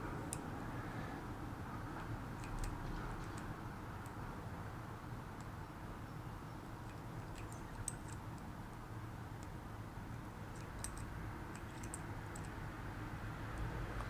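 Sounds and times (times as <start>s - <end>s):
low steady hum: 0.0s - 14.0s
small metallic clicks of lock picking: 2.4s - 4.2s, 6.8s - 8.4s, 10.5s - 12.6s.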